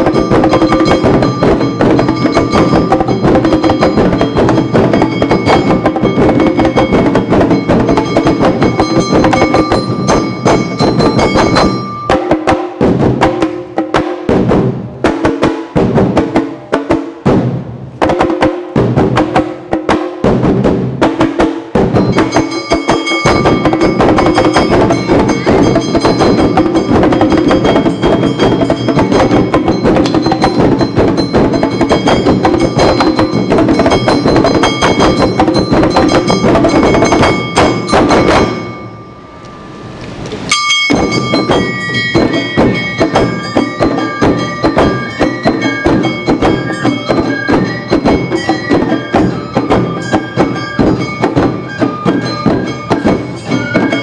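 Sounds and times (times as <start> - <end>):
ringing hand gong: 0.0 - 12.8, 21.9 - 39.9, 40.5 - 54.0
shamisen: 0.0 - 14.2, 21.8 - 39.6, 40.5 - 54.0
festival drums: 0.0 - 54.0
bamboo flute melody: 22.0 - 40.0, 40.9 - 54.0.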